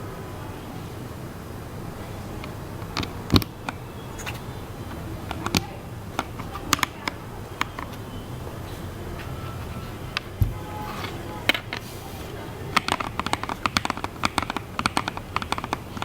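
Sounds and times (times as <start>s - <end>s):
mechanical keyboard typing: 2.4s - 8.2s, 12.6s - 16.0s.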